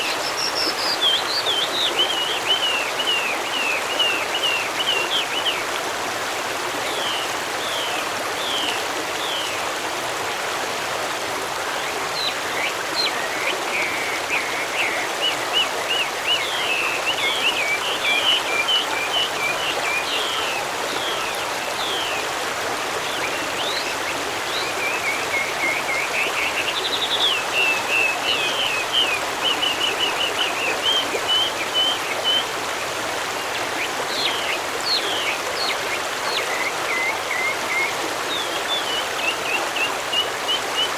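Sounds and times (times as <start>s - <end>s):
forest stream rushing: 0.0s - 40.9s
songbirds chirping and trilling: 11.7s - 40.9s.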